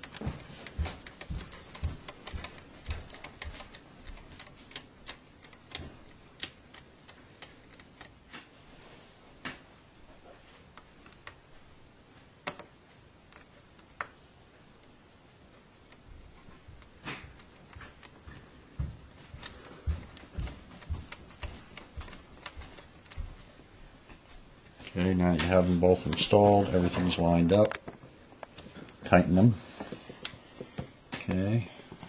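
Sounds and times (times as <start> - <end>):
screwdriver clicks and taps: 0.0 - 8.1, 12.4 - 12.7.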